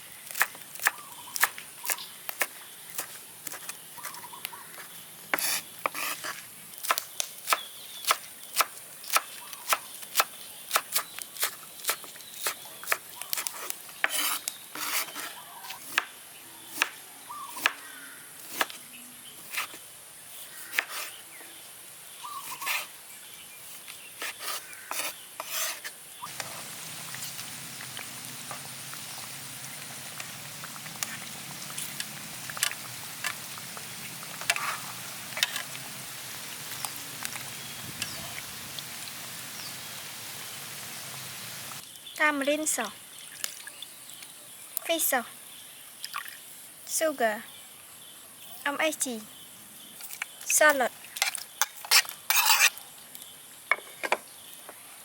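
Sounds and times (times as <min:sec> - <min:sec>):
meat sizzling in oil: 0:26.3 - 0:41.8
metal utensils clinking on pan: 0:51.2 - 0:52.7.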